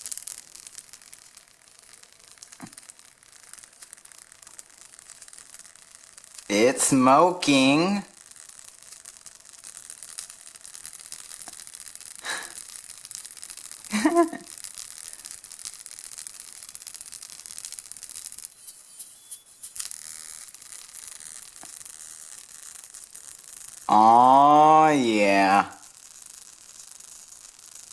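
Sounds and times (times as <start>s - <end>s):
voice coil flapping: 0.0s - 27.9s
speaker high hissing buzz: 6.2s - 9.4s, 10.9s - 13.0s, 13.7s - 15.4s, 17.6s - 27.9s
short voice sound: 23.9s - 25.8s.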